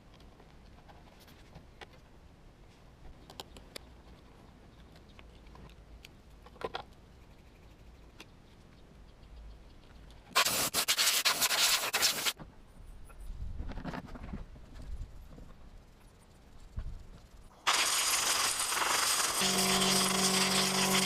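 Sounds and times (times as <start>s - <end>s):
parts rubbing and scraping: 10.3s - 12.4s, 17.7s - 21.0s.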